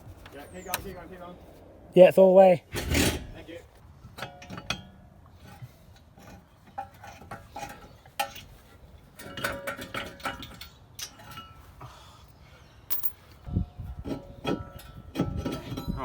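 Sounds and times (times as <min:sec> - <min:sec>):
metal tools clinking: 0:12.9 - 0:13.3.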